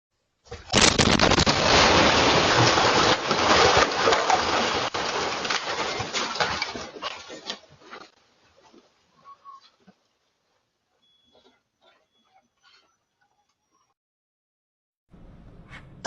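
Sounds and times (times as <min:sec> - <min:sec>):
explosion rumble with sharp cracks: 0:00.7 - 0:04.0.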